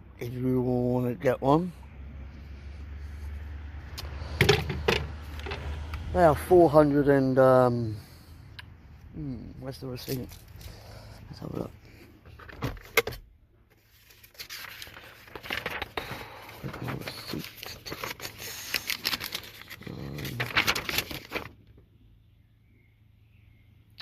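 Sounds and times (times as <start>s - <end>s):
paper rustling: 13.7s - 21.7s.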